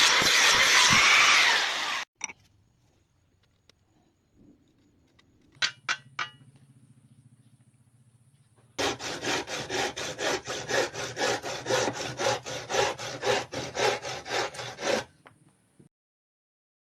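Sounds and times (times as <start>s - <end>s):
hand saw cutting wood: 0.0s - 2.1s, 8.8s - 15.2s.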